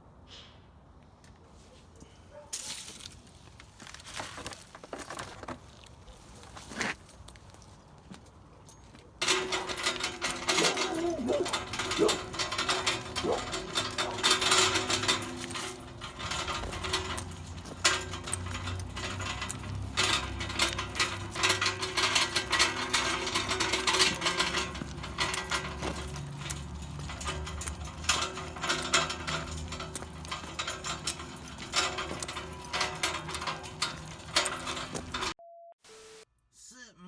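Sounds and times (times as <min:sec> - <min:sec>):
mechanical clicking and rattling: 0:09.2 - 0:35.4.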